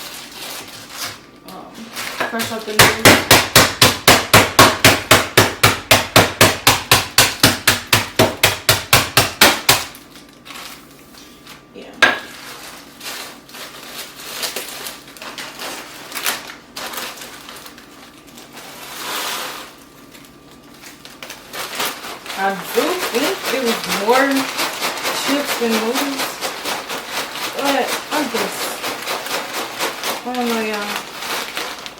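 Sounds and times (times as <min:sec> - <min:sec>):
dry noodles being pounded: 0:02.2 - 0:10.0, 0:12.0 - 0:13.2, 0:21.5 - 0:31.9.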